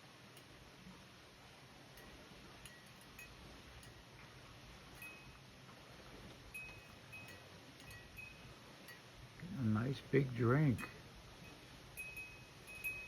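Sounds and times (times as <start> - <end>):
thin high-pitched tinkles: 6.5 - 9.1, 10.6 - 13.0.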